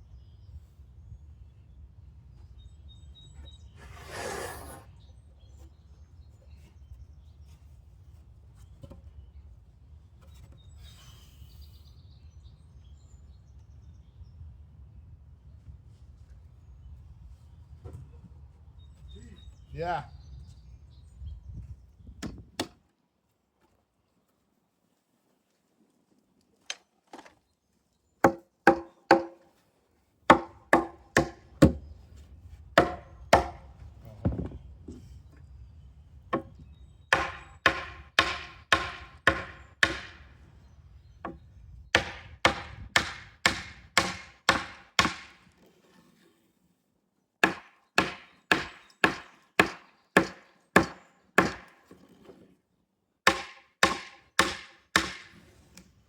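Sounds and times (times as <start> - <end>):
hammering on wood: 28.2 - 29.5, 30.3 - 31.8, 32.8 - 33.7, 36.3 - 40.3, 41.3 - 45.4, 47.4 - 51.9, 53.3 - 55.4.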